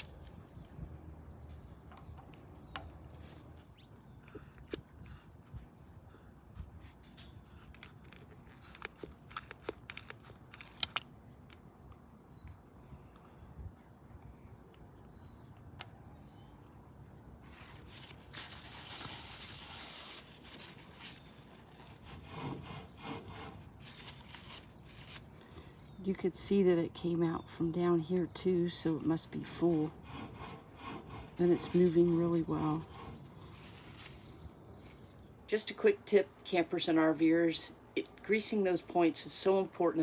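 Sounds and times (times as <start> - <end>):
bird chirping: 0.0 - 6.4, 7.0 - 9.2
grease gun clicks: 7.5 - 11.6
rubbing: 17.5 - 25.3, 29.6 - 34.3.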